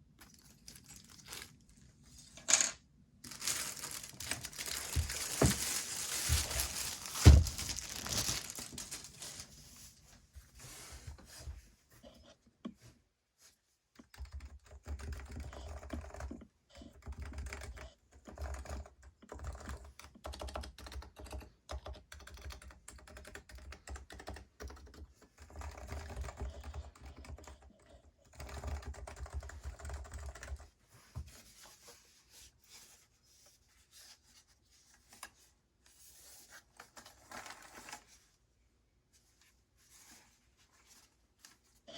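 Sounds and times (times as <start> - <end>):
handling noise: 3.3 - 9.4
typing on a keyboard: 14.0 - 30.7.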